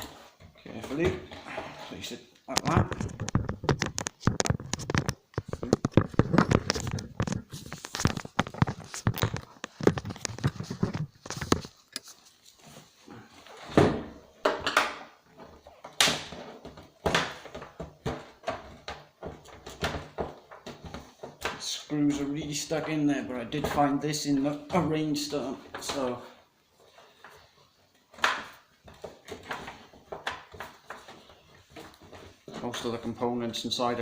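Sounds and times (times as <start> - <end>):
knocks and scrapes on plastic case: 2.5 - 11.8.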